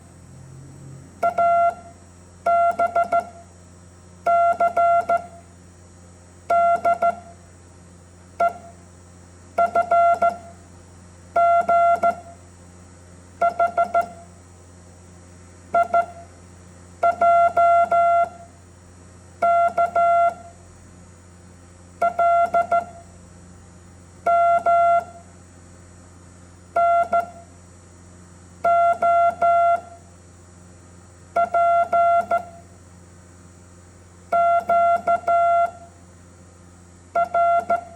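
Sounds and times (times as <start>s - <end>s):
faint low hum: 0.0s - 3.5s
morse code beeps: 1.2s - 1.8s, 26.8s - 27.4s, 31.4s - 32.6s, 34.4s - 35.8s, 37.2s - 37.9s.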